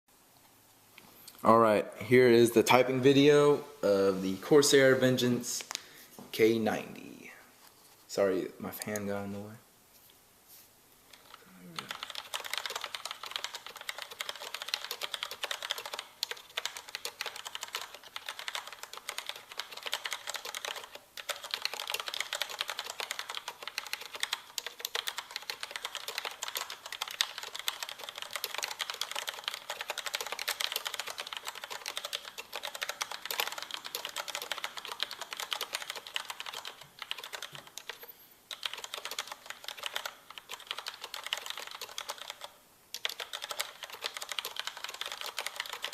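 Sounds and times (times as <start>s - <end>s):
mechanical keyboard typing: 11.1s - 45.9s.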